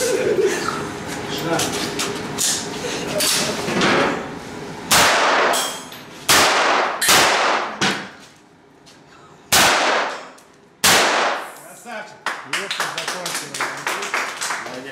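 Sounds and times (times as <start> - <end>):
pistol shots echoing: 4.9 - 5.6, 6.3 - 7.8, 9.5 - 11.5.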